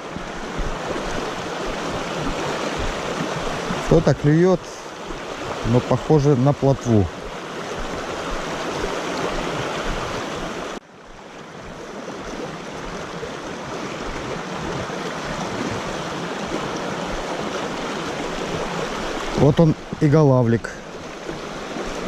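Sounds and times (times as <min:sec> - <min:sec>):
river water rushing over stones: 0:00.0 - 0:22.0.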